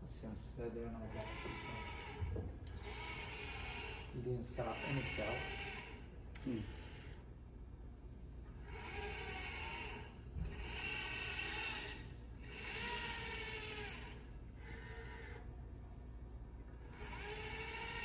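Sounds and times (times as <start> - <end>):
robotic arm motors whining: 1.1 - 6.0, 8.6 - 15.5, 16.8 - 18.0.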